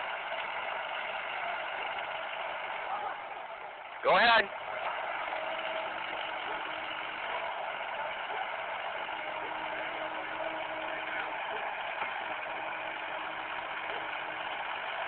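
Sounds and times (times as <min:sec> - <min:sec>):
excavator engine running: 0:00.0 - 0:15.0
faint whine: 0:00.0 - 0:15.0.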